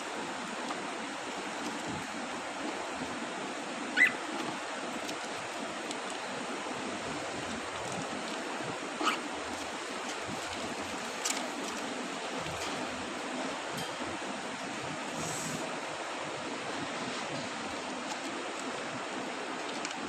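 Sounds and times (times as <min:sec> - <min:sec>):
steady background hiss: 0:00.0 - 0:20.0
cockatiel calls: 0:03.9 - 0:04.3, 0:09.0 - 0:09.3.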